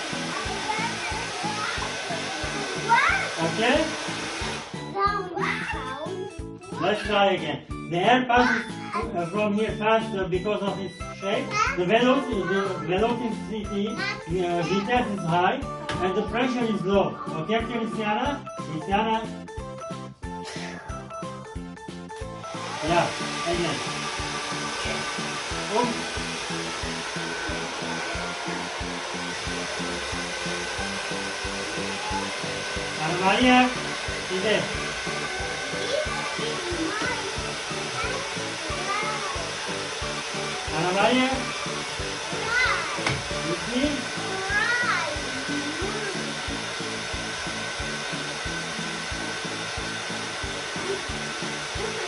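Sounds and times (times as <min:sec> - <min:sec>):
hair dryer blowing: 0:00.0 - 0:05.8, 0:08.4 - 0:18.2, 0:22.2 - 0:52.0
background music with beat: 0:00.0 - 0:52.0.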